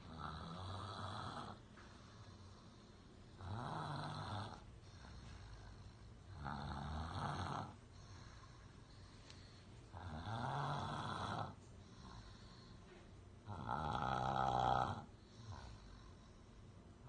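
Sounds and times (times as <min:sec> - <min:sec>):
person snoring: 0:00.0 - 0:01.6, 0:03.3 - 0:08.7, 0:09.9 - 0:12.7, 0:13.4 - 0:16.2
quiet breathing: 0:00.0 - 0:17.0.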